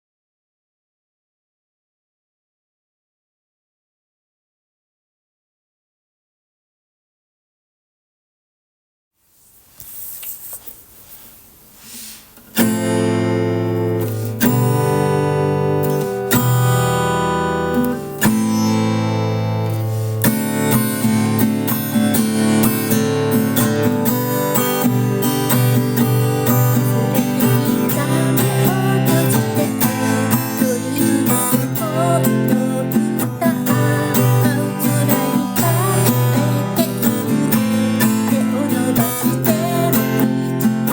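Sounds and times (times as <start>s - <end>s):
faint rustling: 9.2s - 12.6s
acoustic guitar strumming: 12.4s - 40.9s.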